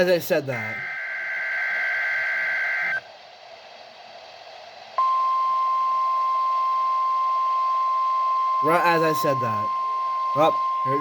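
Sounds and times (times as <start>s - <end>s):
faint radio hiss: 0.0s - 11.0s
steady warning alarm tone: 0.5s - 3.0s, 5.0s - 11.0s
warbling data screech: 0.5s - 3.0s.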